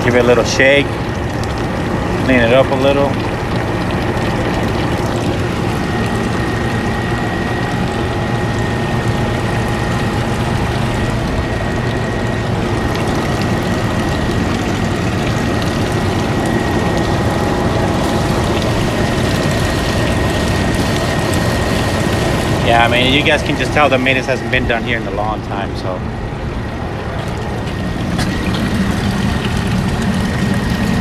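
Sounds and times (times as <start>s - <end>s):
cooler blower running: 0.0s - 31.0s
high whine: 0.0s - 31.0s
water trickling: 0.0s - 31.0s.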